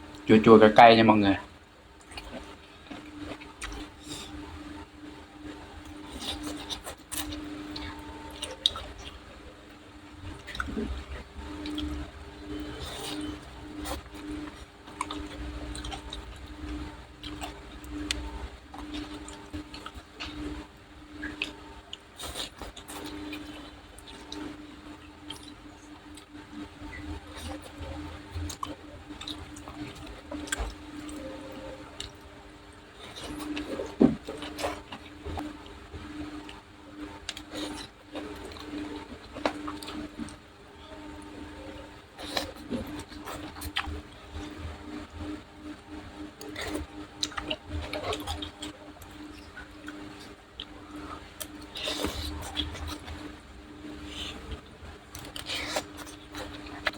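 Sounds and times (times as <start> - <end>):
faint hum: 0.0 - 56.9
wet chewing: 2.0 - 4.5, 5.4 - 9.3, 10.2 - 36.6, 37.2 - 40.4, 42.2 - 44.6, 46.3 - 56.9
wet chewing clicks: 12.6 - 20.6, 46.4 - 50.8.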